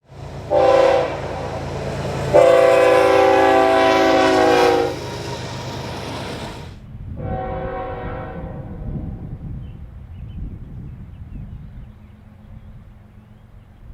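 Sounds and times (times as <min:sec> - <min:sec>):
low rumble of train: 0:00.0 - 0:13.9
locomotive air horn blasts: 0:00.4 - 0:05.1, 0:07.2 - 0:08.9.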